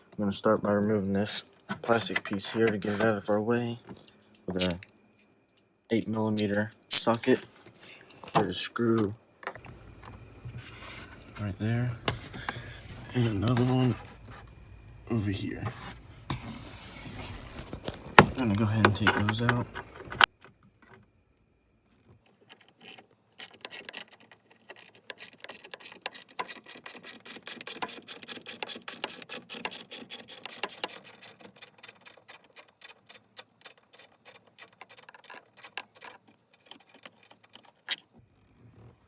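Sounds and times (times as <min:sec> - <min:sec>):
socket ratchet clicking: 0:22.8 - 0:36.2.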